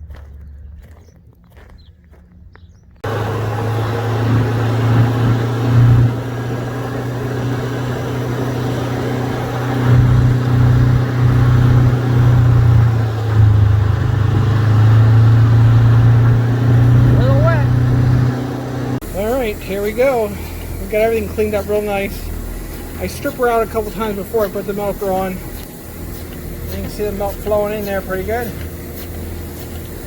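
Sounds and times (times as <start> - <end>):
vacuum pump humming: 3.0 - 30.0.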